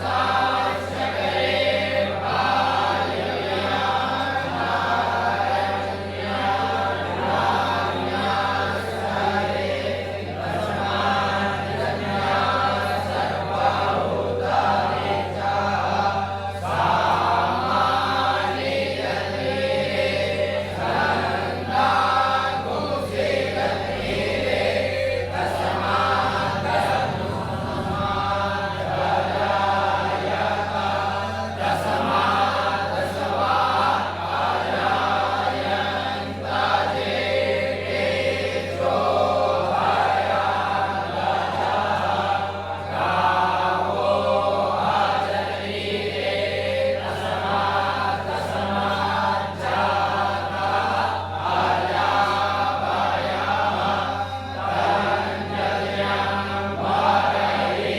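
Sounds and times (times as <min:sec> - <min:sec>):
group chanting mantras: 0:00.0 - 0:57.9
low hum: 0:23.4 - 0:29.4.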